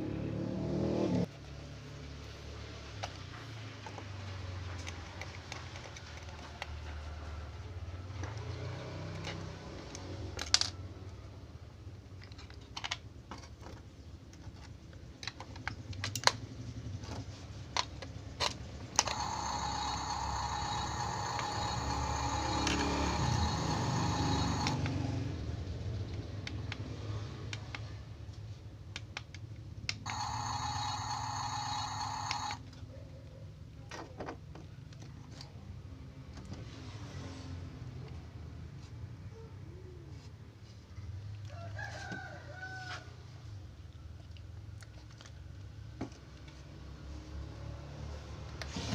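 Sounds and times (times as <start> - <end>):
toy bulldozer buzzing whir: 18.9 - 25.1, 30.0 - 32.7.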